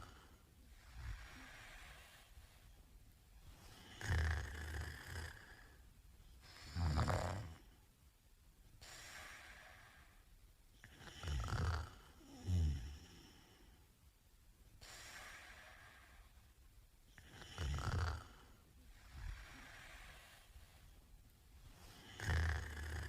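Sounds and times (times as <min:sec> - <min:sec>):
quiet breaths: 0:00.0 - 0:23.0
man snoring: 0:03.7 - 0:05.8, 0:06.5 - 0:07.7, 0:10.8 - 0:13.5, 0:17.2 - 0:20.3, 0:21.9 - 0:23.0.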